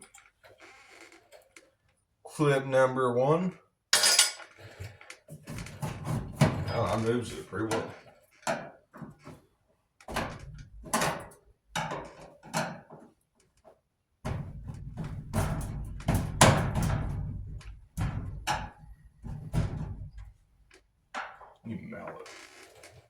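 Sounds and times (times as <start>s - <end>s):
sheet metal clanks and thumps: 14.3s - 20.2s.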